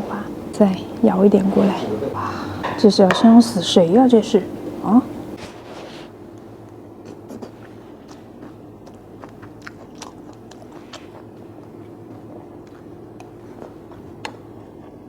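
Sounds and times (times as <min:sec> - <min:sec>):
chewing food: 0:06.3 - 0:15.0
wet mouth clicks: 0:07.1 - 0:11.3.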